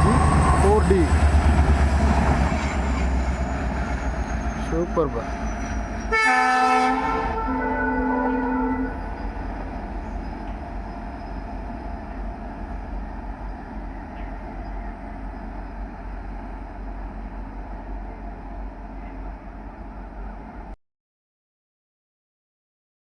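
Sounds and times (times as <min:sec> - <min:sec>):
train rumbling past: 0:00.0 - 0:20.8
multi-tone train horn: 0:06.1 - 0:09.0.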